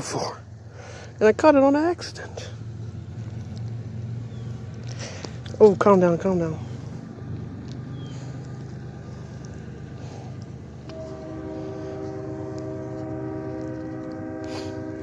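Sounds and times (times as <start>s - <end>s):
steady low hum: 0.0s - 15.0s
train horn chord: 10.8s - 15.0s.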